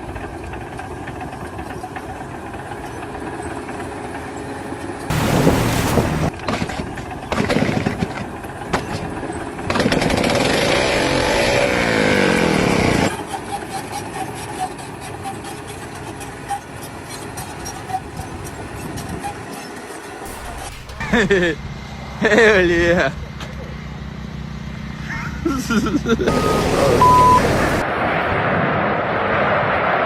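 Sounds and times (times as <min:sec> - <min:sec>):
engine revving: 0:09.7 - 0:13.2, 0:26.3 - 0:27.8.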